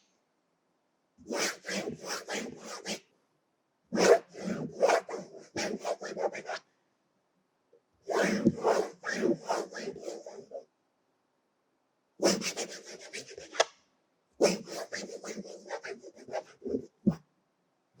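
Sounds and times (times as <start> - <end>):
pen scratching on paper: 1.3 - 3.0, 4.0 - 6.6, 8.1 - 10.6, 12.2 - 13.6, 14.4 - 17.2.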